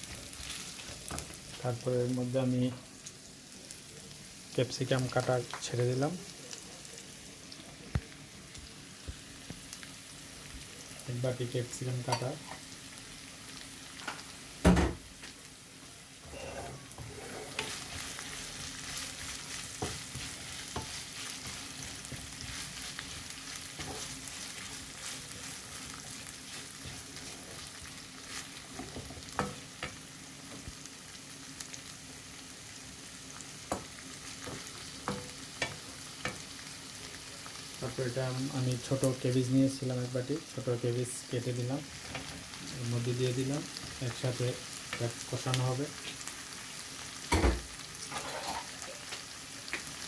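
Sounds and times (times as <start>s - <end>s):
vegetables sizzling in oil: 0.0s - 50.0s
spoon scraping pan: 16.2s - 30.0s, 48.0s - 49.0s.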